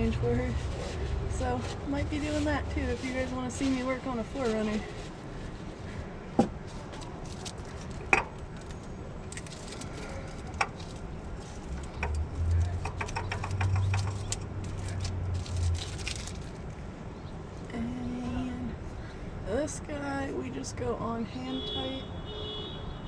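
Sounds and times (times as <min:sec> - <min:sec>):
metal parts and tools clicking: 0:07.4 - 0:16.3.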